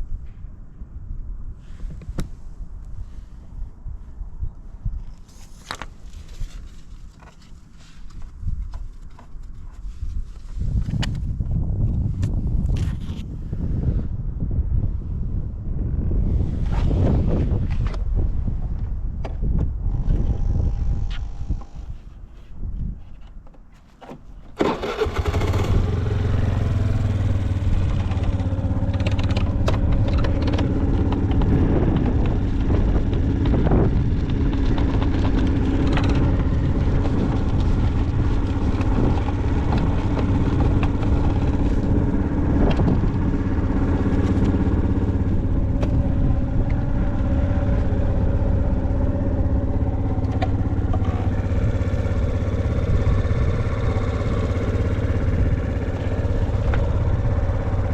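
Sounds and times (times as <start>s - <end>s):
scooter engine idling: 24.6s - 57.9s.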